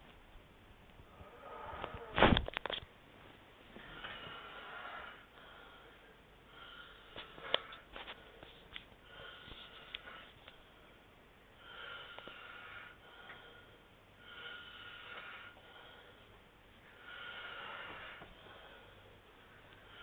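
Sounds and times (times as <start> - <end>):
raspy snoring breaths: 3.8 - 6.0, 11.6 - 16.3, 16.9 - 19.1.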